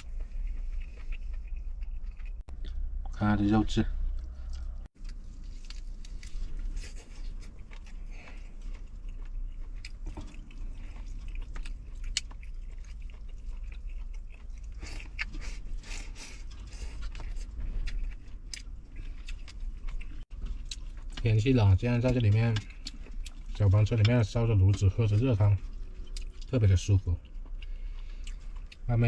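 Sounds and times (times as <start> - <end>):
person chewing food: 0.0 - 3.1, 4.0 - 29.0
steady low hum: 0.0 - 29.0.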